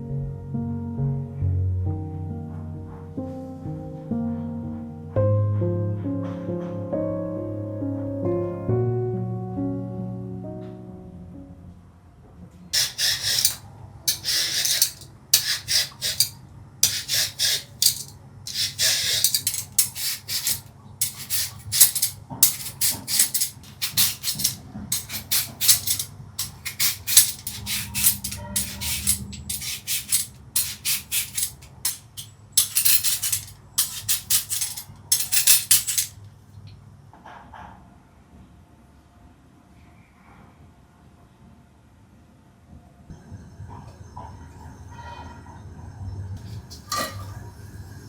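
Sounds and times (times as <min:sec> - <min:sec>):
rasping food scraping strokes: 0:12.8 - 0:35.3.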